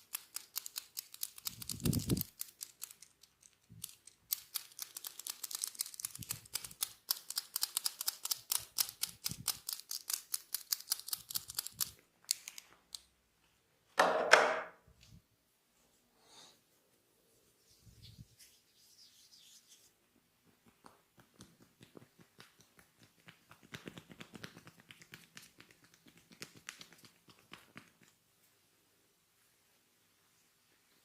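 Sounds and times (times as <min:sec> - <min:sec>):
hands crackling through hair: 0:18.0 - 0:28.2.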